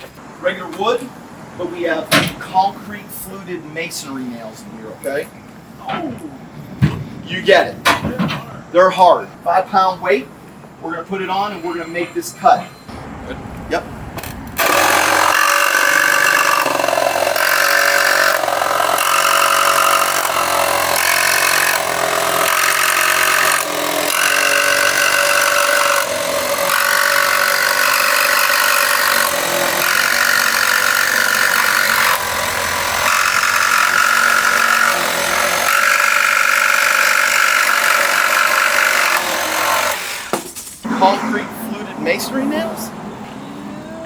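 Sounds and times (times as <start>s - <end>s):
reciprocating saw cutting wood: 14.6s - 42.7s.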